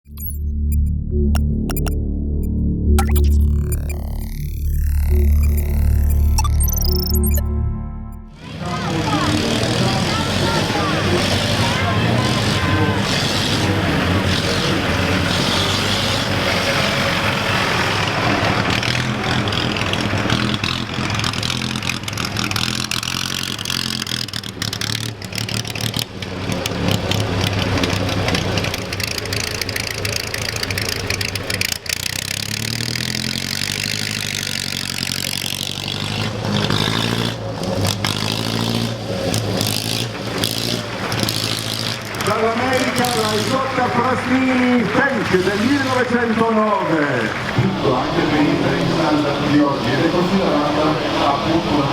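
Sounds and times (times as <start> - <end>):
car engines revving: 0.0 - 7.5, 8.3 - 51.9
sharp ticks: 0.1 - 2.0, 3.0 - 7.5, 18.7 - 43.8.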